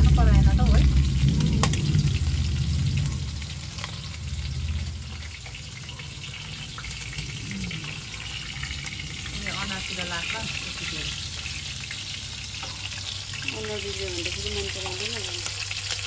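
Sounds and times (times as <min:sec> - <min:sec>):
low hum: 0:00.0 - 0:12.9
food sizzling in oil: 0:00.0 - 0:16.0
crackles and pops of oil: 0:00.3 - 0:07.3.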